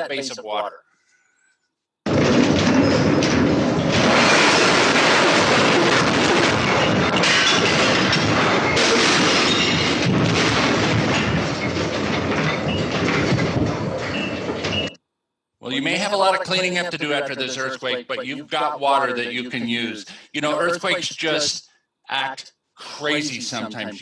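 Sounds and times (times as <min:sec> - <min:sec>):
earthquake rumble and rattle: 0:02.0 - 0:15.0
room contents clattering and crashing: 0:02.0 - 0:15.0.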